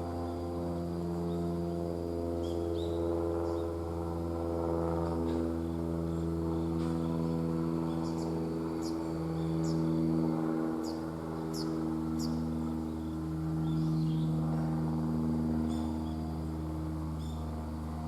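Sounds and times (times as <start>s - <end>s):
low humming drone: 0.0s - 18.0s
small birds chirping: 0.2s - 3.8s, 5.6s - 14.7s, 15.6s - 16.4s, 17.1s - 17.6s.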